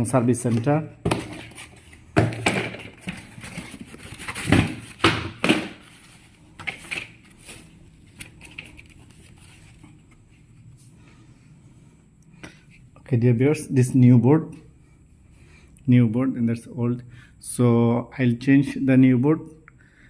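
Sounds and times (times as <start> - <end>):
handling knocks and rustles: 0.4 - 10.6.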